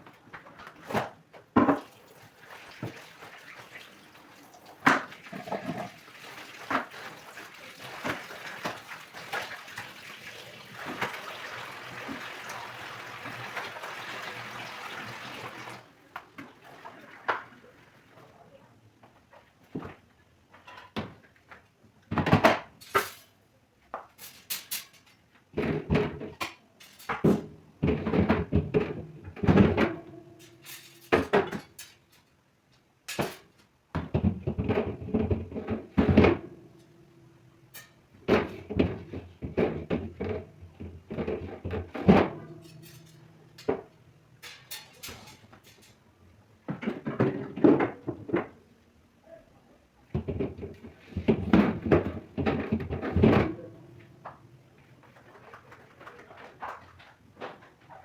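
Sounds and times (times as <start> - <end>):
household items clattering: 4.8 - 9.9, 37.8 - 48.7, 50.1 - 54.3.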